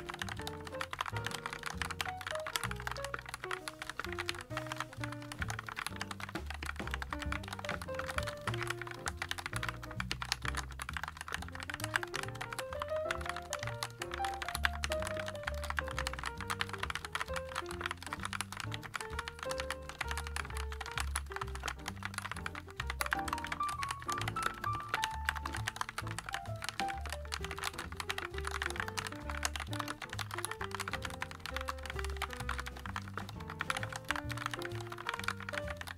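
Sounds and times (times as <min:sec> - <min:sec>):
background music: 0:00.0 - 0:35.9
mechanical keyboard typing: 0:00.0 - 0:35.9.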